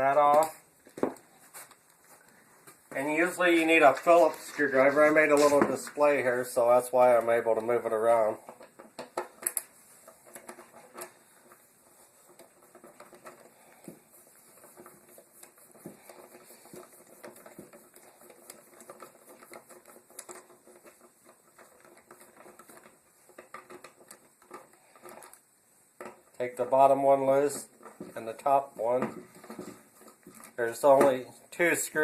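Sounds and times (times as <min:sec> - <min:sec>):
screwdriver clicking and scratching: 0:12.2 - 0:25.4.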